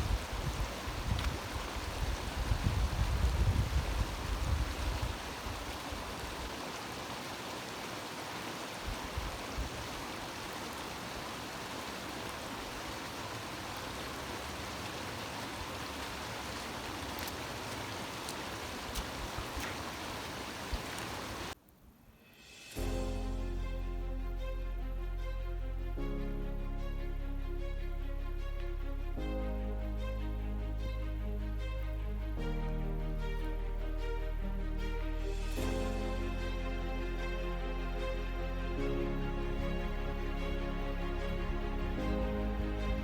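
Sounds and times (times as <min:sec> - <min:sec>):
stream water rushing: 0:00.0 - 0:21.6, 0:27.5 - 0:43.0
low rumble: 0:22.8 - 0:43.0.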